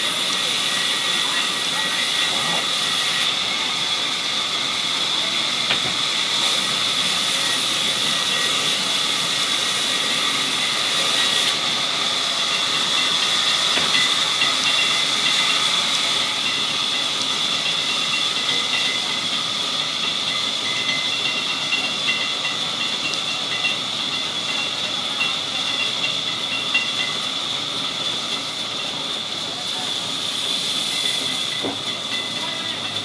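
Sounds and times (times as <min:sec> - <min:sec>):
sawmill saw cutting wood: 0:00.0 - 0:20.2, 0:28.3 - 0:33.0.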